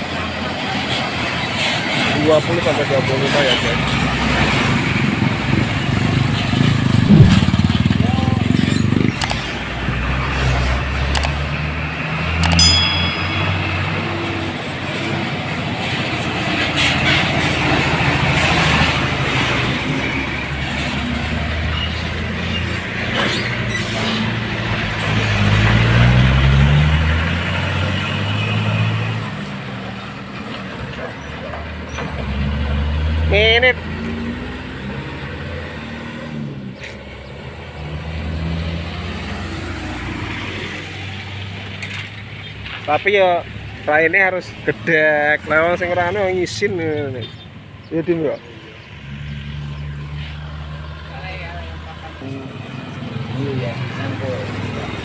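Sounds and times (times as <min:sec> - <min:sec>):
diesel truck engine running: 0:00.0 - 0:12.5
road noise: 0:00.0 - 0:55.0
truck engine running: 0:03.7 - 0:21.6.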